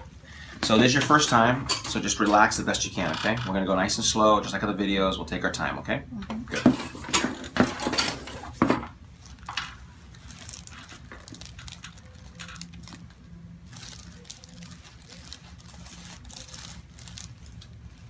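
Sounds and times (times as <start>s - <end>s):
rustling and crinkling: 6.6s - 18.0s.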